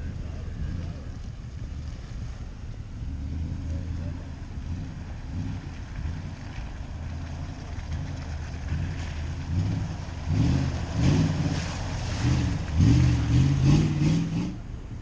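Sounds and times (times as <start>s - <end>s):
truck engine low rumble: 0.0s - 15.0s.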